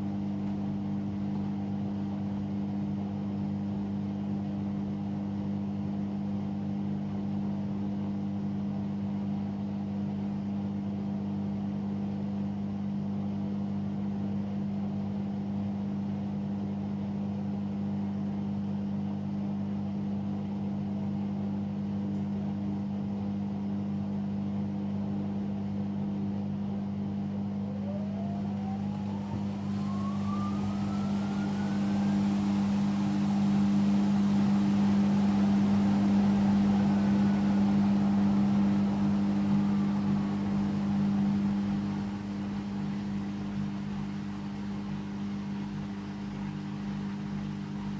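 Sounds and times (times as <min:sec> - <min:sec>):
washing machine spin whine: 0:00.0 - 0:47.9
washing machine motor hum: 0:27.2 - 0:47.9.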